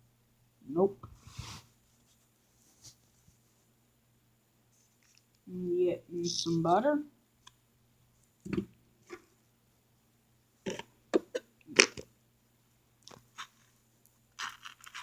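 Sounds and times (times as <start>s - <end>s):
knife scraping butter on toast: 14.4s - 15.0s.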